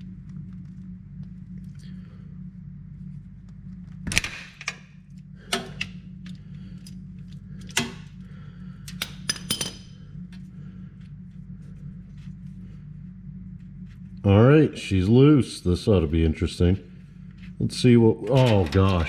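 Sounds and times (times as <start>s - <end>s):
steady low hum: 0.0s - 19.0s
metal tools clinking: 9.0s - 10.0s.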